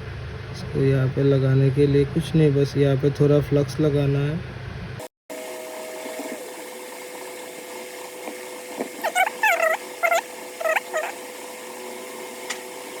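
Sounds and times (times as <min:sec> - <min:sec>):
cat meowing: 0:09.0 - 0:11.2.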